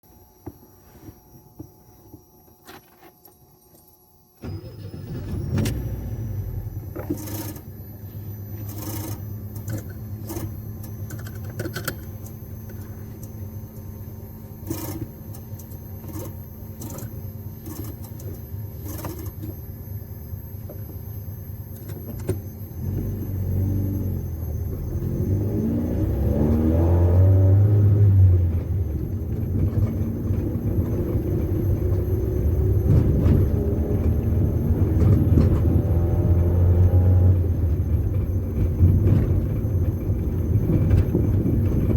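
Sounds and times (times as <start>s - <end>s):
car engine running and revving: 4.8s - 14.0s, 21.7s - 41.9s.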